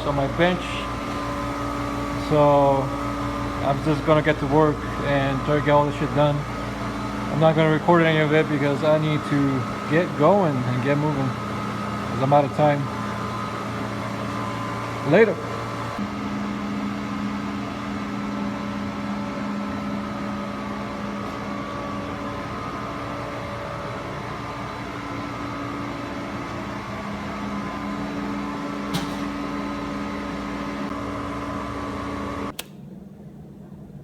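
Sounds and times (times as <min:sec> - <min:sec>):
machinery humming: 0:00.0 - 0:34.0
sharp click: 0:32.5 - 0:32.8.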